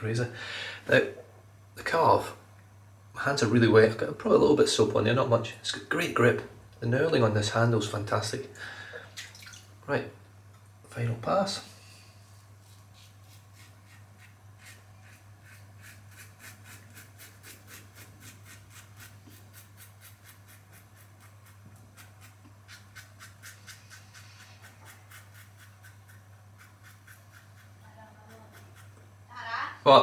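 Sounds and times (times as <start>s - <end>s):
razor scraping stubble: 12.3s - 29.0s.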